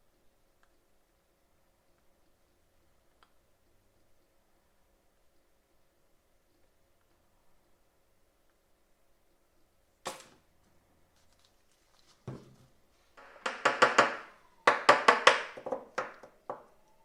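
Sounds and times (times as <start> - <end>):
thump: 12.3 - 12.6.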